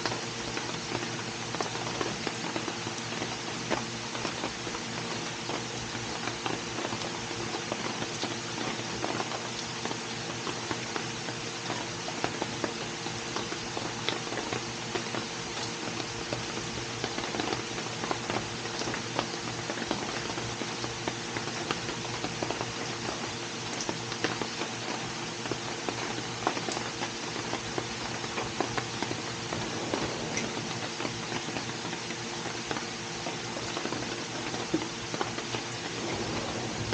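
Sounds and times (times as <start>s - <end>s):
rain patter: 0.0s - 36.9s
steady hum: 25.8s - 36.9s.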